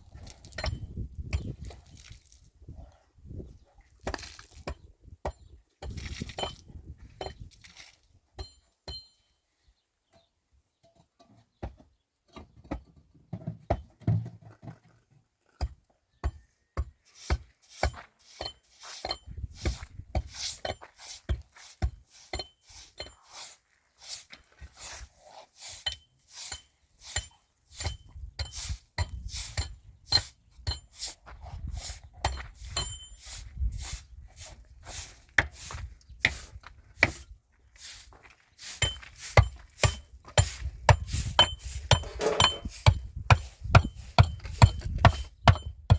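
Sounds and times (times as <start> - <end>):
sharp metallic knocks and clinks: 0.5 - 1.5, 8.4 - 9.3, 25.8 - 30.9, 32.2 - 33.3, 41.4 - 45.9.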